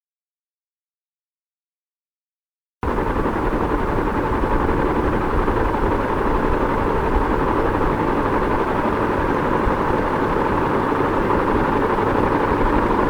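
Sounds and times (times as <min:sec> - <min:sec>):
ceiling fan running: 0:02.8 - 0:13.0.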